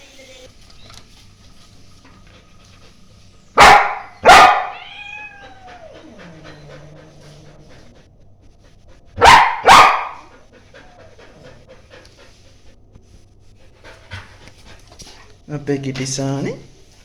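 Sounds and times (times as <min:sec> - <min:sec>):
puppy barking: 0:03.5 - 0:07.4, 0:09.2 - 0:11.4.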